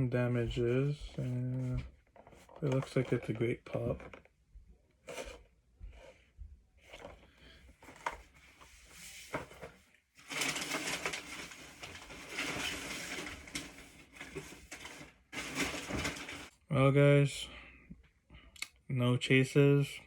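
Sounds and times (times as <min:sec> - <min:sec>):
packaging taps and rustles: 0:02.0 - 0:04.3, 0:06.9 - 0:16.5
wrapping material crinkling: 0:07.8 - 0:16.5.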